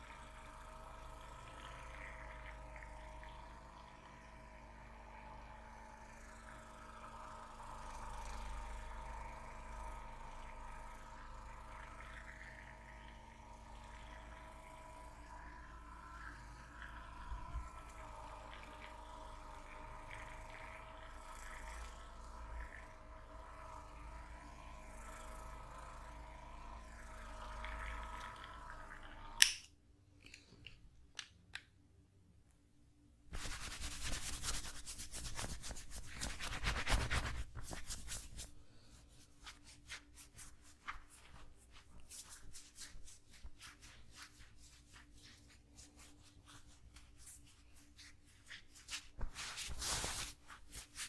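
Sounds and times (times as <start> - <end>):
faint steady hum: 0.0 - 51.0
hands rubbing skin and clothing: 33.3 - 51.0.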